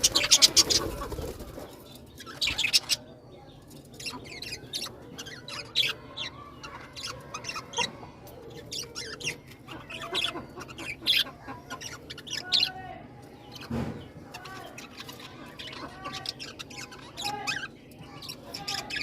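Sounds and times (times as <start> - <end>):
wing flapping: 0.0 - 1.8.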